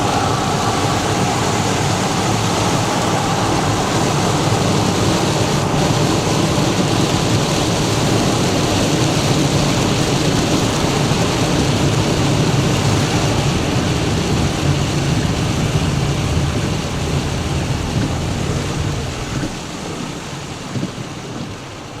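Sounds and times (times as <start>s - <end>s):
heavy rain drumming on a car: 0.0s - 22.0s
tyres on flooded road: 0.0s - 22.0s.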